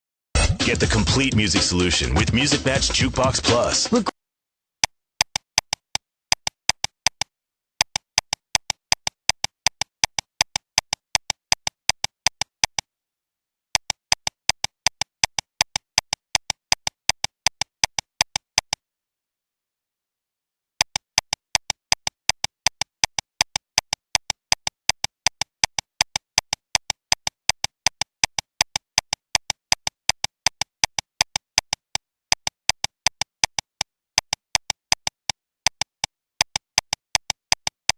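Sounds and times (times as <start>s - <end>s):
sharp electronic clicks: 4.8s - 12.9s, 13.8s - 18.8s, 20.8s - 37.9s.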